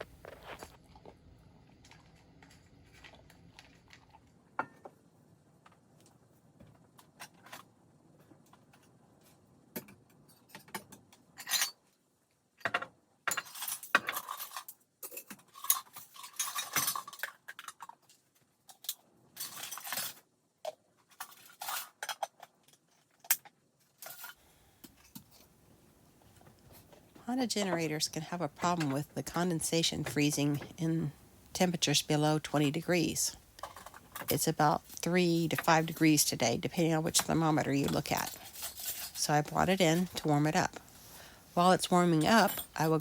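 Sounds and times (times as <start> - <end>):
objects scraping: 0.0 - 0.8
household objects clinking: 32.4 - 40.8, 41.6 - 43.0.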